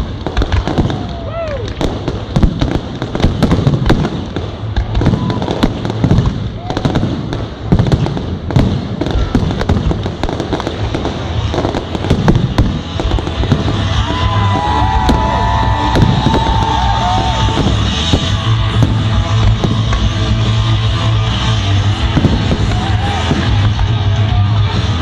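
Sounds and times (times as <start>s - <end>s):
fireworks bangs and crackles: 0.0s - 25.0s
loud music with bass: 13.0s - 25.0s.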